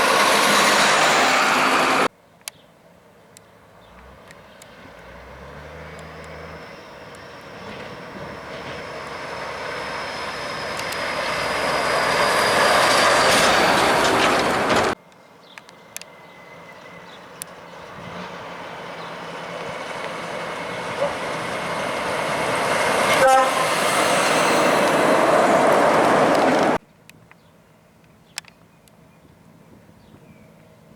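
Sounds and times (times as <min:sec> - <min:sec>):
heavy truck approaching: 0:00.0 - 0:02.1, 0:03.8 - 0:15.0, 0:16.1 - 0:26.8.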